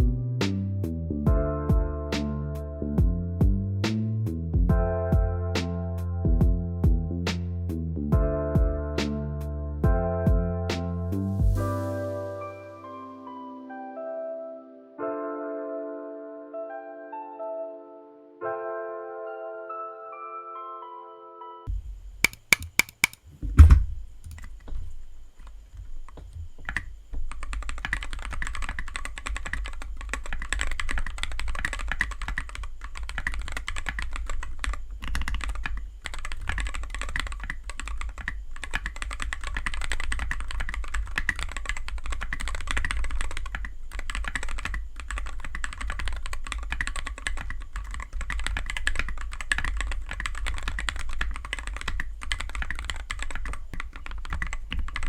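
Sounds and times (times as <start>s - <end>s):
typing on mechanical keyboard: 22.2s - 23.2s, 24.3s - 24.6s, 26.1s - 55.0s.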